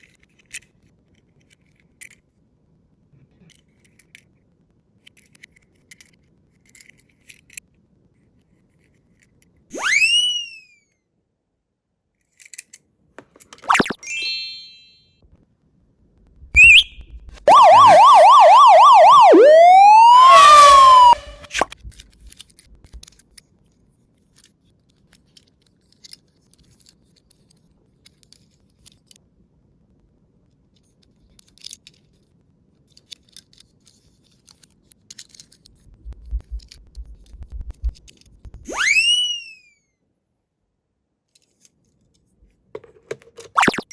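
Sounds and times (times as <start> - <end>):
police siren yelping and wailing: 16.6 - 16.9, 17.5 - 21.7, 38.6 - 39.5
low knocks and sharp clicks: 35.9 - 38.7.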